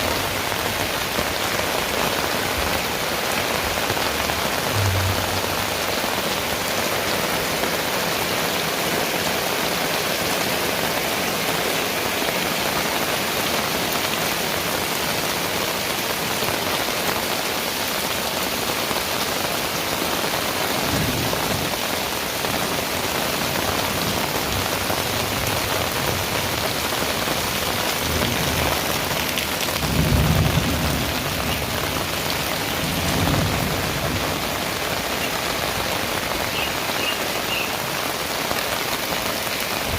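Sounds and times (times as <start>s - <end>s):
heavy rain falling: 0.0s - 39.9s
thunder rumbling: 3.6s - 7.4s.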